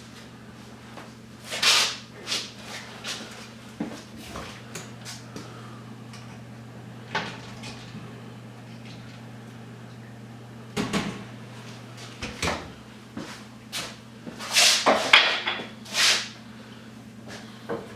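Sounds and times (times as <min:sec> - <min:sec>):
steady low hum: 0:02.1 - 0:14.4.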